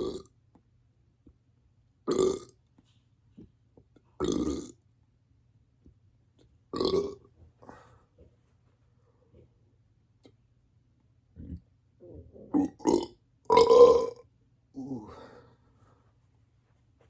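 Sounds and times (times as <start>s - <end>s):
person burping: 0.0s - 0.3s, 2.1s - 2.5s, 4.2s - 4.8s, 6.7s - 7.3s, 11.4s - 14.2s, 14.8s - 15.2s.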